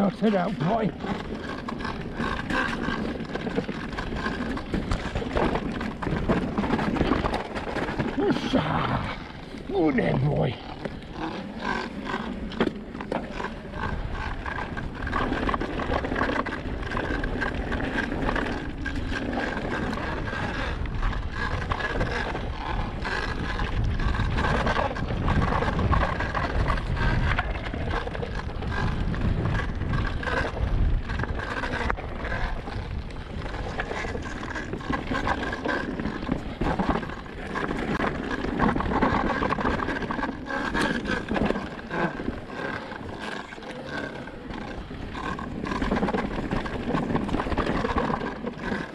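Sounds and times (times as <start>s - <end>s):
bike rattling over rough ground: 0.0s - 48.9s
tyres on dirt: 0.0s - 48.9s
wind on microphone: 13.6s - 48.9s.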